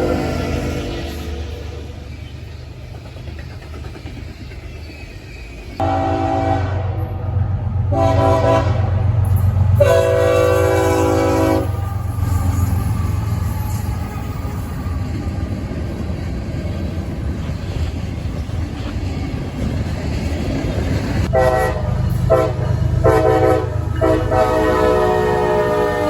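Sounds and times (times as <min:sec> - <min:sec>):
diesel locomotive engine rumbling: 0:00.0 - 0:26.0
locomotive air horn blasts: 0:05.8 - 0:09.2, 0:09.8 - 0:12.7, 0:21.3 - 0:26.0.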